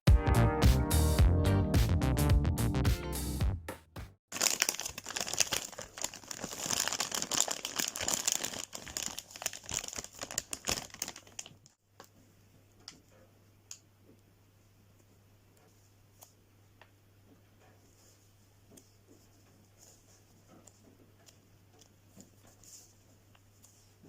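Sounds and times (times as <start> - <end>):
plastic packaging crinkling: 4.3 - 12.1.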